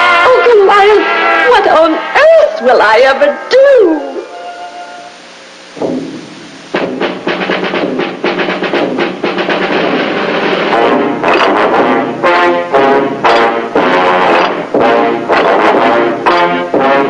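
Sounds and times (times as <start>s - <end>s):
loud brass phrases: 0.0s - 5.1s, 8.7s - 17.0s
fast clipped orchestral notes: 6.8s - 17.0s.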